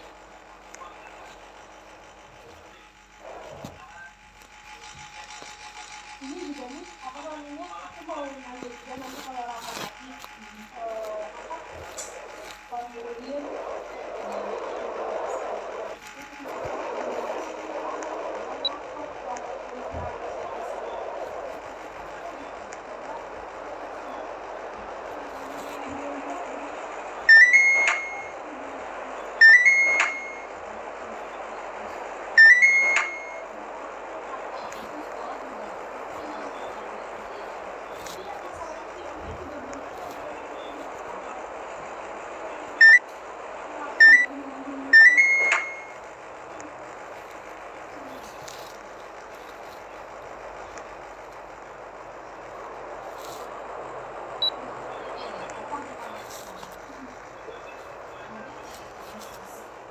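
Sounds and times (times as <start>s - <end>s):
air conditioner beeping tune: 0.0s - 34.6s, 42.0s - 43.2s, 43.8s - 46.2s
faint low hum: 0.0s - 59.9s
fan hiss: 0.0s - 59.9s.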